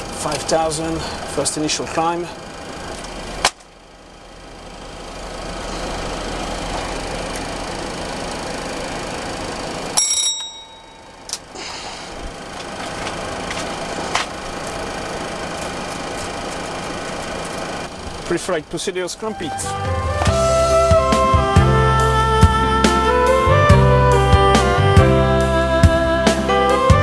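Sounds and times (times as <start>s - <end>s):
bell-like chime: 10.0s - 11.2s.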